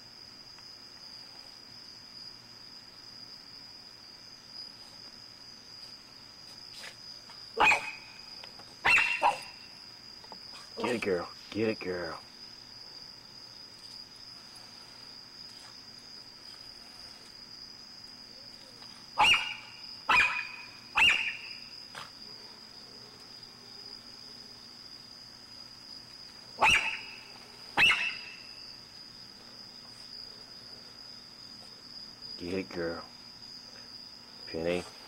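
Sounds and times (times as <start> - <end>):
dog barking: 7.6 - 8.2, 8.8 - 9.6, 19.2 - 22.1, 26.6 - 27.2, 27.8 - 28.4.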